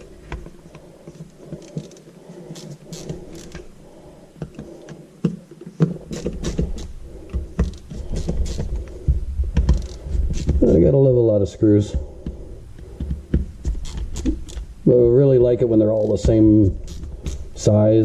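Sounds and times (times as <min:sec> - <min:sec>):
plastic drill being handled: 0:00.3 - 0:03.7
heavy knocks and handling rumble: 0:04.4 - 0:18.0.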